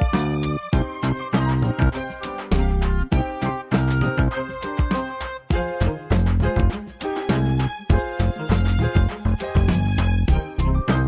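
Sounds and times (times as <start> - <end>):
background music with steady beat: 0.0 - 11.0.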